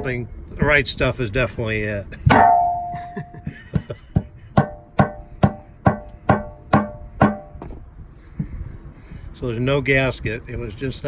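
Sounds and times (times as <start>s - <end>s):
hammer blows on metal: 2.3s - 7.8s.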